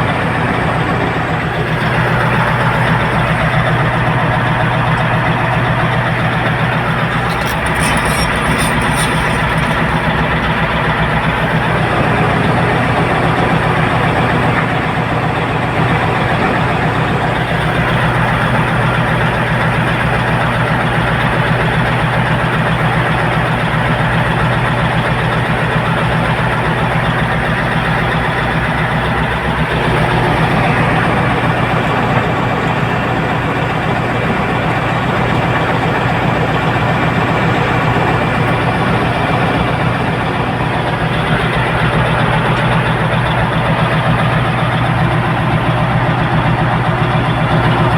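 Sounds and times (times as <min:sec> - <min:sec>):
heavy diesel engine running: 0:00.0 - 0:47.9.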